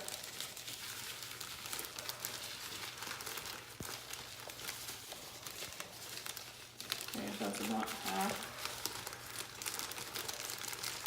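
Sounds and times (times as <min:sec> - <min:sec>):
sand pouring into plastic bag: 0:00.0 - 0:02.4
plastic crinkling: 0:00.0 - 0:11.0.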